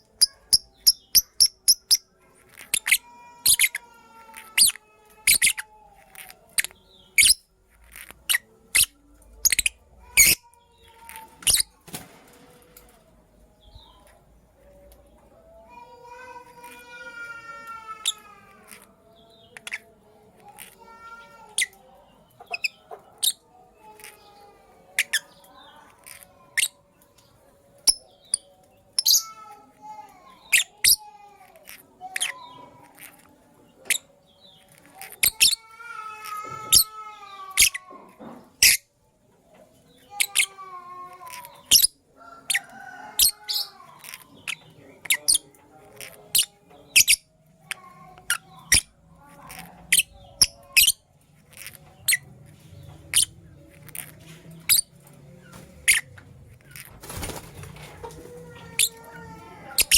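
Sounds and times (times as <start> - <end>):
birds chirping shrilly: 54.0 - 59.9.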